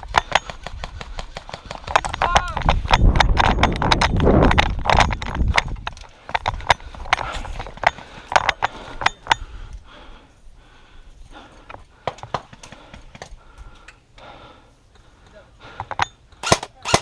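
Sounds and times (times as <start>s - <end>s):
low rumbling handling noise: 0.0s - 9.6s
airsoft guns firing: 16.4s - 17.0s.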